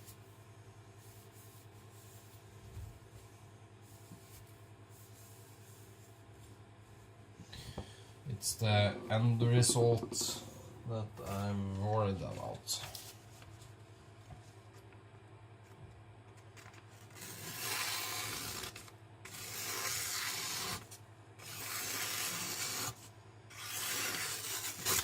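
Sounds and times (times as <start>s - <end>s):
knife slicing through paper: 17.0s - 25.0s.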